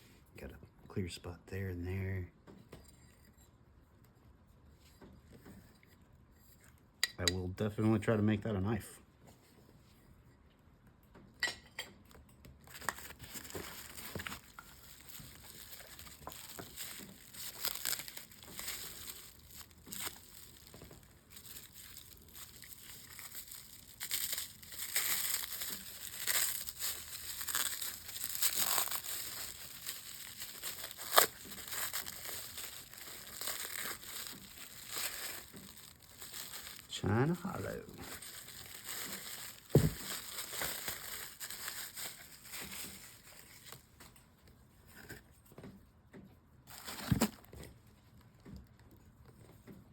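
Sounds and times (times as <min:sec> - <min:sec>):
wrapping material crinkling and tearing: 0:12.6 - 0:44.0, 0:46.7 - 0:47.7.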